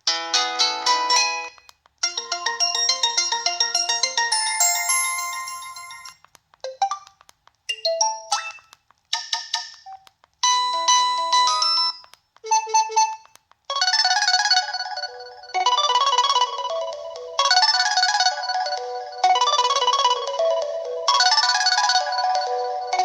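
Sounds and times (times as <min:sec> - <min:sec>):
electronic ringtone melodies: 0:02.1 - 0:07.1, 0:14.6 - 0:23.0.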